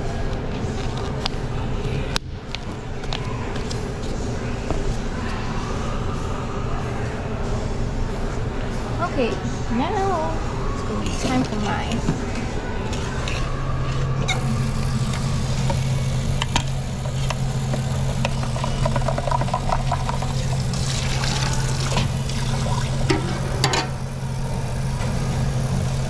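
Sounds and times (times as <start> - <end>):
mixer motor humming: 13.8 - 26.0
utensils clinking: 14.3 - 26.0.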